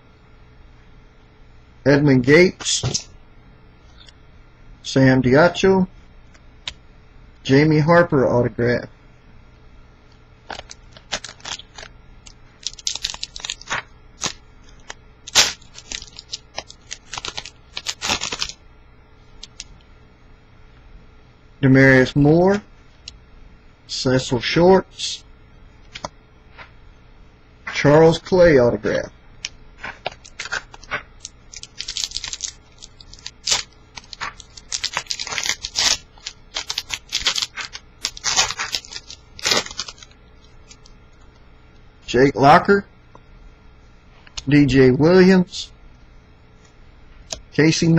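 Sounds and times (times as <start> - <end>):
cards being handled: 10.5 - 18.6, 25.9 - 26.7, 29.5 - 40.9
plastic wrapper tearing and crinkling: 10.5 - 18.6, 29.8 - 40.9.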